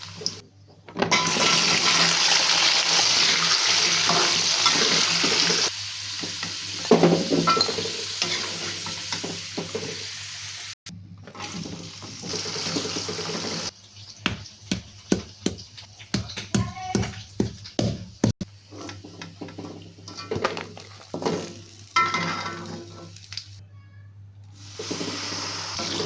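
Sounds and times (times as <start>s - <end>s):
utensils and pans clattering: 1.0s - 2.1s, 6.2s - 10.0s, 18.8s - 23.0s
steady cooking hiss: 1.4s - 10.8s, 24.5s - 26.0s.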